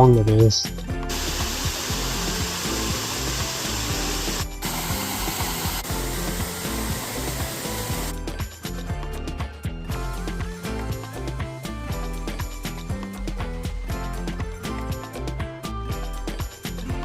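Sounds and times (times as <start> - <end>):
background music: 0.0 - 17.0
loud rushing hiss: 1.1 - 8.1.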